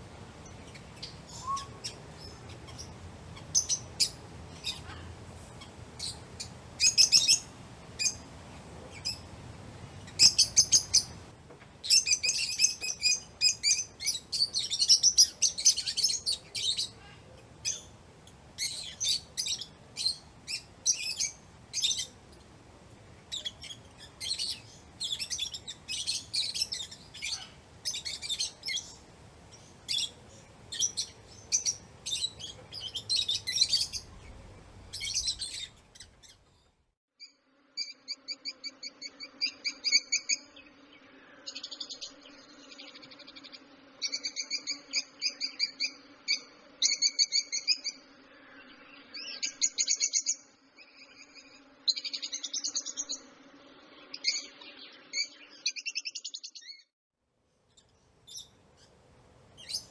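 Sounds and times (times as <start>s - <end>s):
birds chirping: 0.0s - 36.8s, 57.7s - 59.9s.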